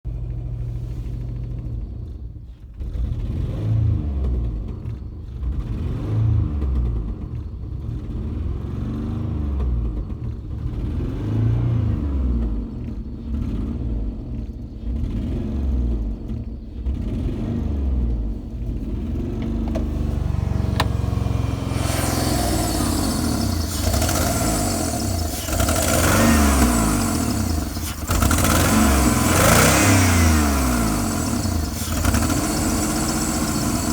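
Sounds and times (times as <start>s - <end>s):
rough engine surging: 16.8s - 33.9s
loud hiss: 20.6s - 33.9s.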